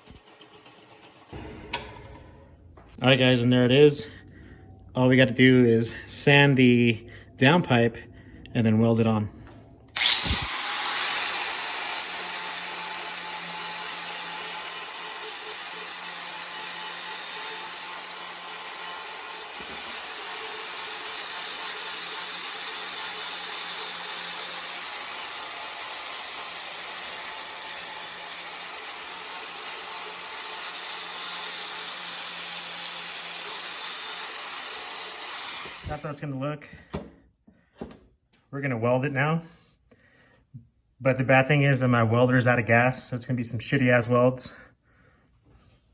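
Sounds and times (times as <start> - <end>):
power sander grinding metal: 10.0 - 36.2.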